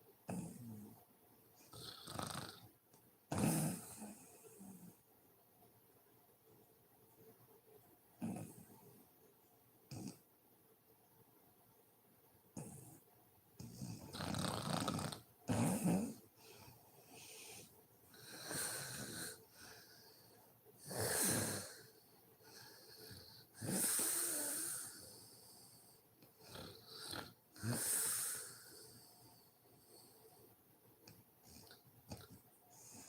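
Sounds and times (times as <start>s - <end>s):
woman snoring: 1.7s - 2.6s, 3.3s - 4.2s, 13.8s - 16.2s, 20.8s - 21.9s, 23.6s - 25.0s, 26.4s - 28.7s.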